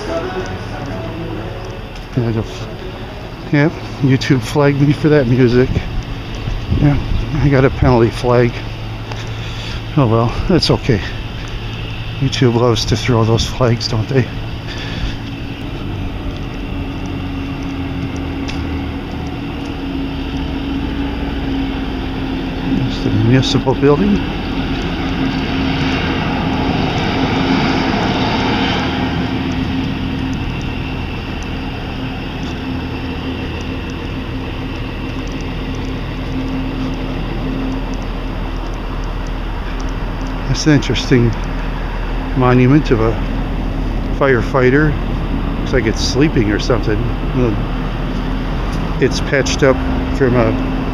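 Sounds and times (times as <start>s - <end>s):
road noise: 0.0s - 50.9s
steady mechanical hum: 0.0s - 50.9s
faint ticks: 29.4s - 40.4s.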